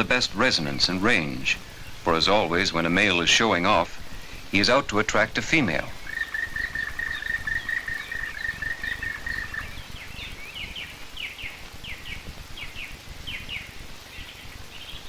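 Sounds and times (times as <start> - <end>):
songbird trill: 0.0 - 15.0
short falling bird chirps: 6.0 - 11.6.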